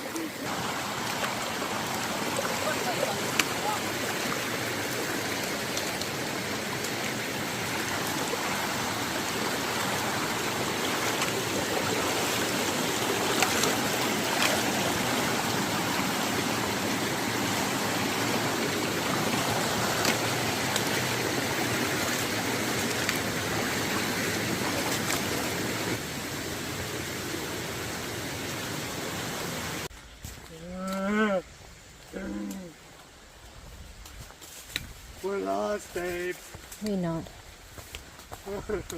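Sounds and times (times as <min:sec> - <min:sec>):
stream water rushing: 0:00.0 - 0:29.9.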